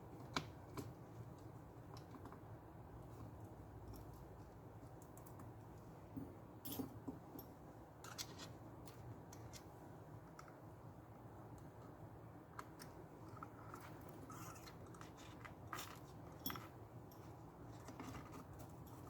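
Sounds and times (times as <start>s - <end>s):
low room hum: 0.0s - 19.0s.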